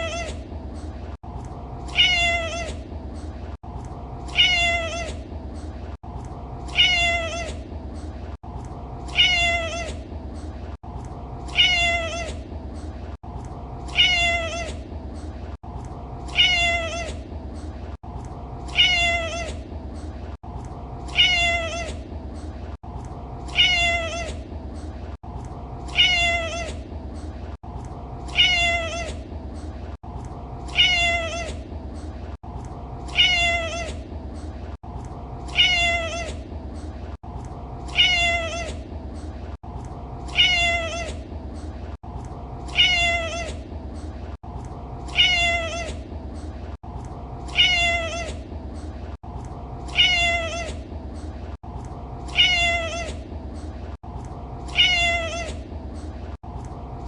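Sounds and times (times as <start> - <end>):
cat meowing: 0.0 - 0.4, 1.9 - 2.8, 4.3 - 5.2, 6.7 - 7.6, 9.1 - 10.0, 11.5 - 12.4, 13.9 - 14.8, 16.3 - 17.2, 18.7 - 19.6, 21.1 - 22.0, 23.5 - 24.4, 25.9 - 26.8, 28.3 - 29.2, 30.7 - 31.6, 33.1 - 34.0, 35.5 - 36.4, 37.9 - 38.8, 40.3 - 41.2, 42.7 - 43.6, 45.1 - 46.0, 47.5 - 48.4, 49.9 - 50.8, 52.3 - 53.2, 54.7 - 55.6.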